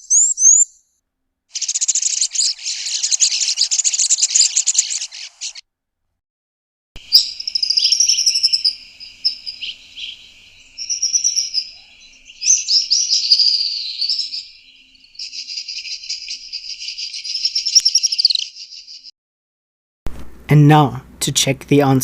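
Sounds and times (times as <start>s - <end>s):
bird fast trill: 0.0s - 0.8s, 1.5s - 5.6s, 7.0s - 19.1s
bird whistling sliding notes: 1.6s - 5.6s, 7.1s - 18.7s.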